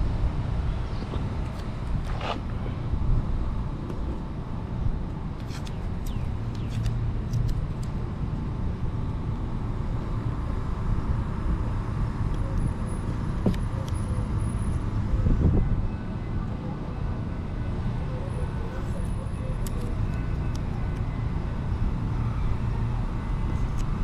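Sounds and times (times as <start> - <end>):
road traffic rumble: 0.0 - 24.0.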